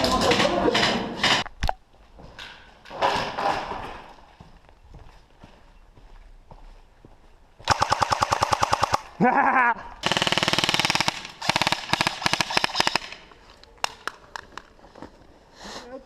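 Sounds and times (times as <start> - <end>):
airsoft rifles firing full auto: 7.6 - 9.1, 10.0 - 13.3.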